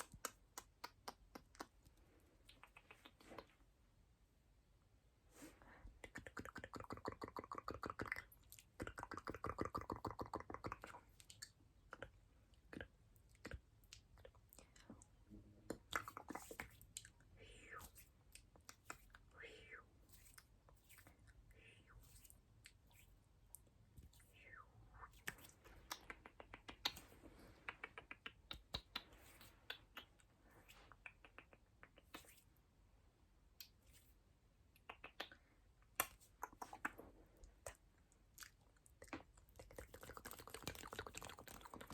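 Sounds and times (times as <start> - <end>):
wet mouth clicking and smacking: 0.0 - 3.6, 6.0 - 14.9, 25.0 - 32.4, 34.7 - 41.9.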